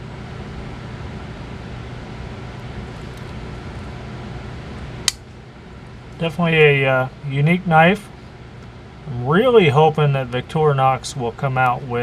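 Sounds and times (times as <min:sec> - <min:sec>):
low hum and hiss: 0:00.0 - 0:12.0.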